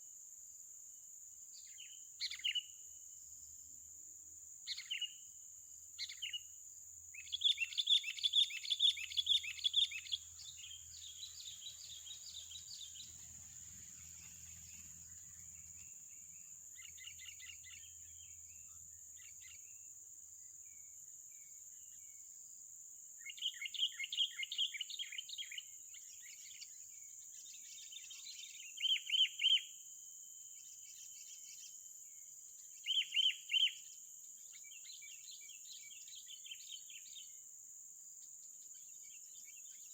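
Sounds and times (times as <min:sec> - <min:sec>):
bird chirping rapidly: 0:07.2 - 0:15.1.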